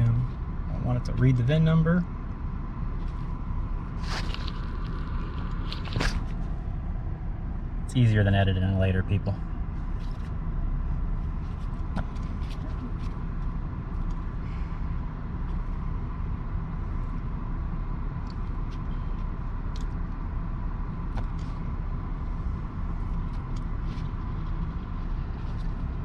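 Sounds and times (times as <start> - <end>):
car engine rumbling: 0.0 - 26.0.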